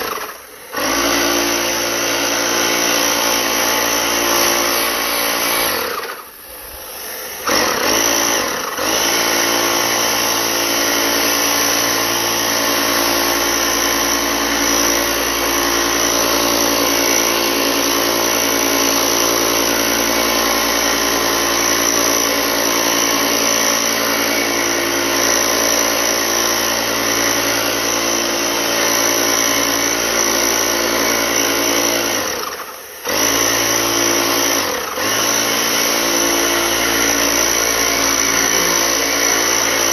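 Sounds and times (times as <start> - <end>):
motor-driven sprayer running: 0.0 - 39.9.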